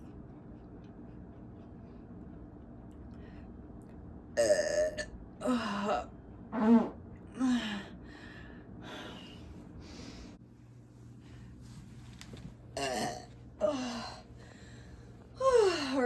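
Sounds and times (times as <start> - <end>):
woman burping: 4.4 - 6.0, 12.8 - 13.3.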